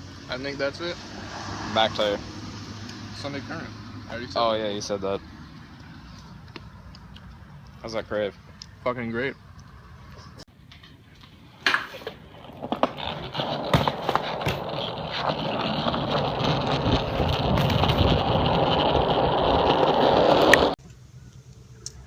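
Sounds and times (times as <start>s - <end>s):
bike rolling over hard ground: 11.6s - 20.8s.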